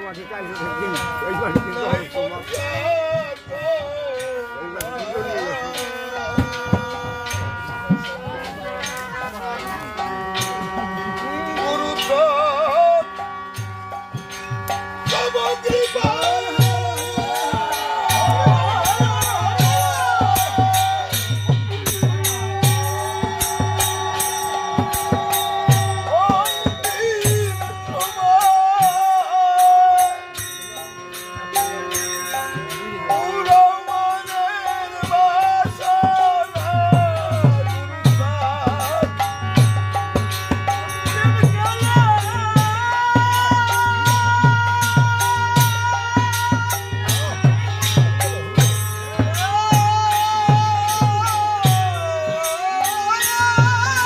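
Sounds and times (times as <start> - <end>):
jingling percussion: 0.0 - 54.0
wavering held melody: 0.0 - 54.0
drum with pitch-bending strokes: 10.0 - 29.1, 34.9 - 54.0.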